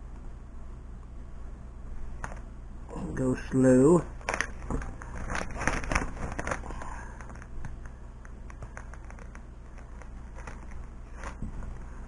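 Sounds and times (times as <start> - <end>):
tape peeling with crackling ticks: 4.2 - 11.4.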